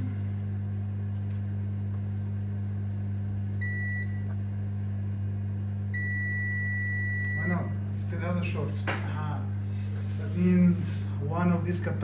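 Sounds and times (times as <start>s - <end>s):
low electrical hum: 0.0s - 12.0s
multimeter continuity beep: 3.6s - 4.2s, 6.0s - 7.5s.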